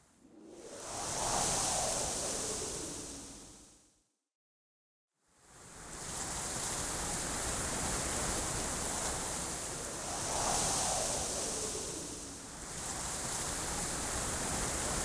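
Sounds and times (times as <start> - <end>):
wind: 0.0 - 4.0, 5.2 - 15.0.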